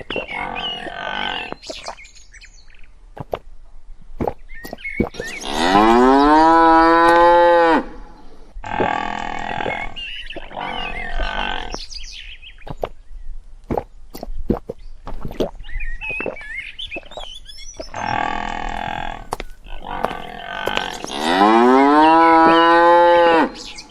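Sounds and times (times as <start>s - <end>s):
cattle mooing: 5.4s - 7.9s, 18.0s - 23.8s.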